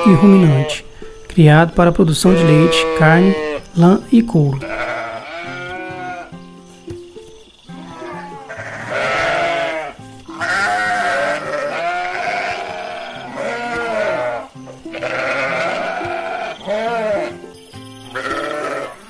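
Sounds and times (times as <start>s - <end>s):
sheep bleating: 0.0s - 0.8s, 2.2s - 3.8s, 4.4s - 6.4s, 7.7s - 17.5s, 18.1s - 19.0s
background music: 0.0s - 19.0s.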